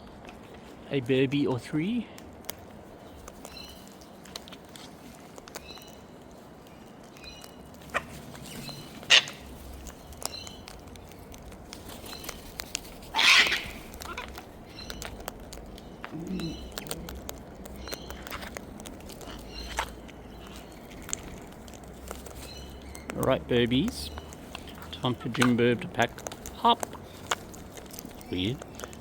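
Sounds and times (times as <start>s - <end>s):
sharp clicks: 6.6s - 29.0s.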